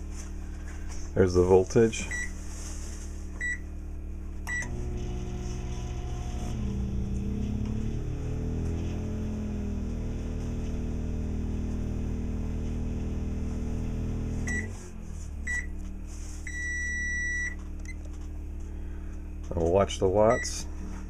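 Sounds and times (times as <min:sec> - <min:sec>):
microwave oven humming: 0:00.0 - 0:21.0
microwave beeps: 0:02.0 - 0:02.4, 0:03.4 - 0:03.7, 0:04.4 - 0:04.9, 0:14.4 - 0:14.7, 0:15.4 - 0:15.8, 0:16.4 - 0:18.1, 0:20.2 - 0:20.6.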